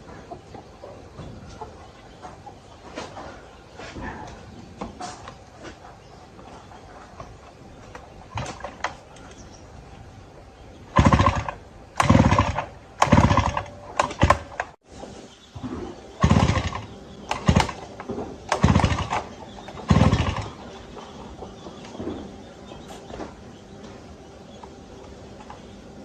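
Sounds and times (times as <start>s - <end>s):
motorcycle engine cranking: 7.9s - 9.4s, 10.9s - 14.8s, 16.2s - 20.9s.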